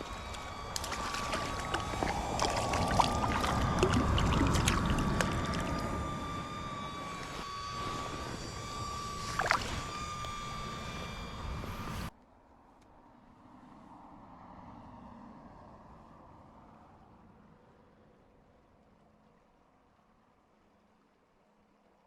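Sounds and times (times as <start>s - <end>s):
small clicks and splashes: 0.0s - 5.9s, 9.4s - 9.8s
running water: 0.0s - 6.0s, 9.2s - 9.9s
faint steady high tone: 0.0s - 12.1s
wind: 0.0s - 22.0s.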